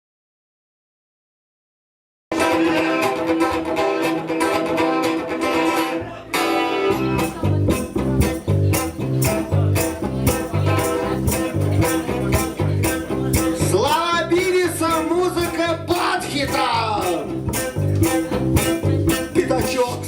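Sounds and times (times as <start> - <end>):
bass line: 2.3 - 20.0
strummed guitar: 2.3 - 20.0
drums: 5.4 - 20.0.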